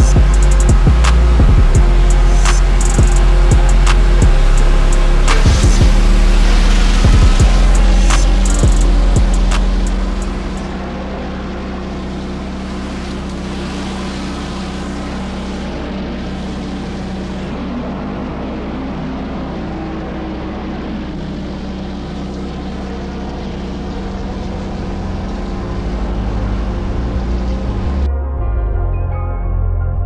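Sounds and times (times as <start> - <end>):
gas engine hum: 0.0 - 19.4
deep rumble: 0.0 - 30.0
high-pressure water hissing on concrete: 1.9 - 10.7, 12.5 - 17.5.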